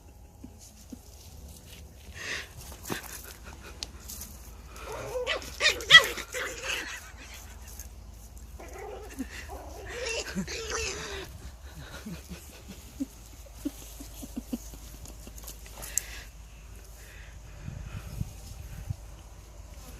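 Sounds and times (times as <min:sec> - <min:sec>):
dogs barking and whining: 0:04.7 - 0:07.9, 0:08.5 - 0:14.2.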